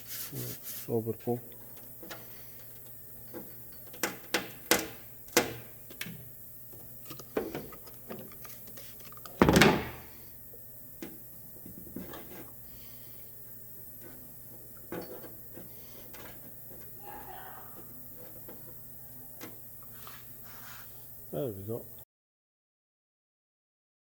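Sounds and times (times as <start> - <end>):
loud thump on metal panel: 9.4 - 10.1.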